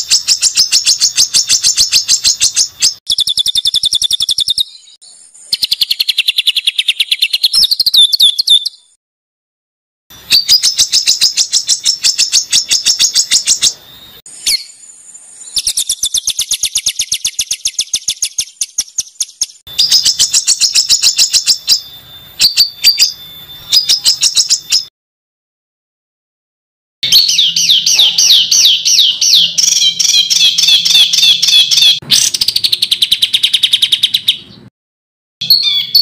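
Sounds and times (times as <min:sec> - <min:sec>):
songbird rapid sharp notes: 0:00.0 - 0:08.8, 0:10.1 - 0:24.9, 0:27.0 - 0:34.6
bird whistle: 0:00.0 - 0:09.0, 0:10.1 - 0:24.9, 0:27.0 - 0:34.6, 0:35.4 - 0:36.0.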